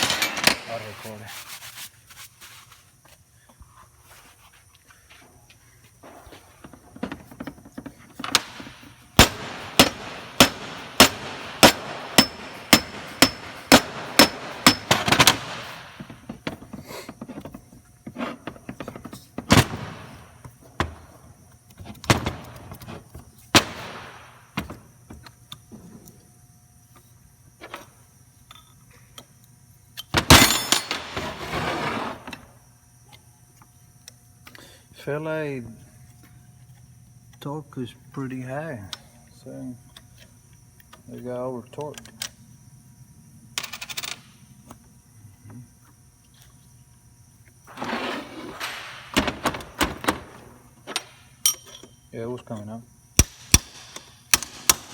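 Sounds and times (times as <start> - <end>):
ringing metal-on-metal strikes: 9.8 - 15.0.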